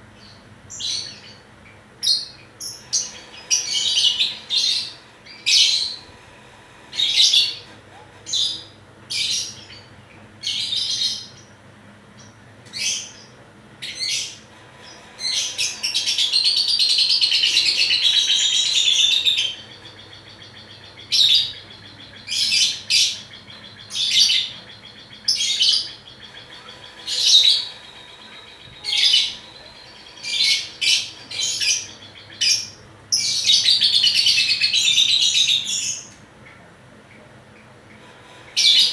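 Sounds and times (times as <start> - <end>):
lovebird chirping: 13.9 - 36.2
lovebird chattering warble: 14.1 - 36.1.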